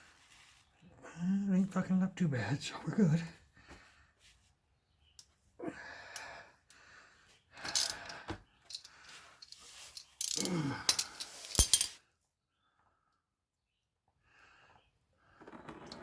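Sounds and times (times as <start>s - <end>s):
metal tools clinking and rattling: 7.6s - 12.0s.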